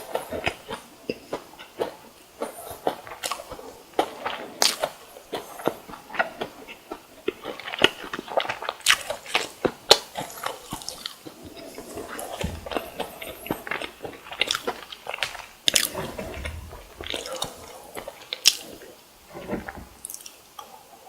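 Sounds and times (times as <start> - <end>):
crunchy food chewing: 0.0 - 20.4
soft low thuds: 15.8 - 17.7.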